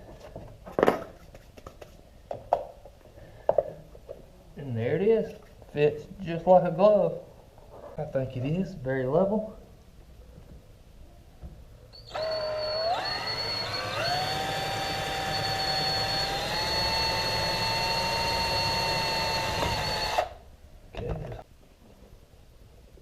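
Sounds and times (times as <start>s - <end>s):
small power tool motor: 12.0s - 20.4s.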